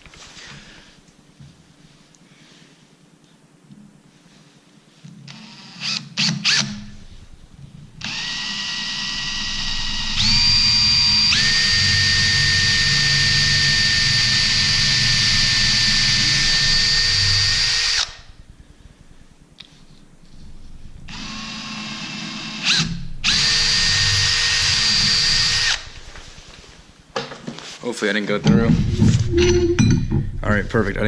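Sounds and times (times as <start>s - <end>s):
power drill boring wood: 5.3s - 7.0s, 8.0s - 18.4s, 21.1s - 26.0s.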